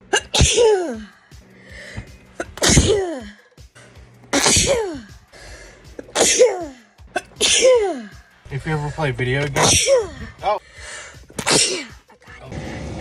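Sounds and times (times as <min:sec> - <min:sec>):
person sneezing: 0:00.1 - 0:01.1, 0:02.4 - 0:03.4, 0:04.3 - 0:05.1, 0:06.0 - 0:08.1, 0:11.4 - 0:12.0.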